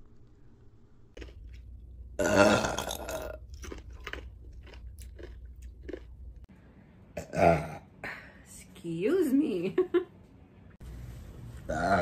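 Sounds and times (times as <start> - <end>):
woman burping: 2.2 - 3.4, 7.2 - 7.9.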